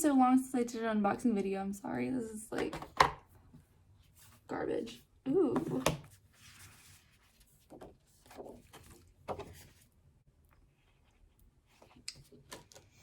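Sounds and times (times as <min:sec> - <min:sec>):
paper and cardboard rustling: 0:05.7 - 0:09.9.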